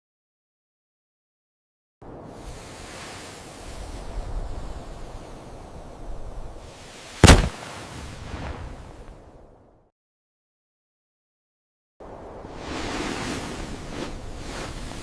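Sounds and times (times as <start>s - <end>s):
sharp explosion blast: 7.2s - 7.7s.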